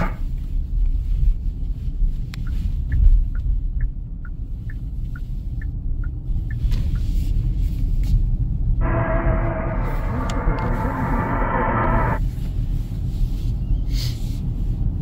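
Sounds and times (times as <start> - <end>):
turn signal ticking: 0.0 - 9.0
car rumbling: 0.0 - 15.0.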